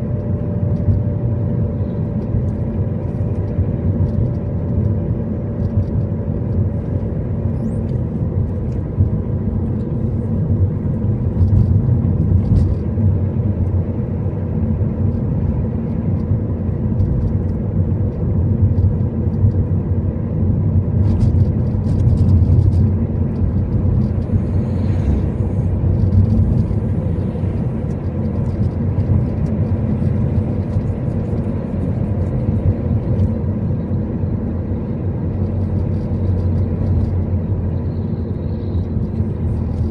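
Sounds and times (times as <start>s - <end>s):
car engine and road rumble: 0.0s - 39.9s
faint ticks and rattles: 15.9s - 19.7s, 21.0s - 25.2s, 25.8s - 33.4s, 35.4s - 37.4s.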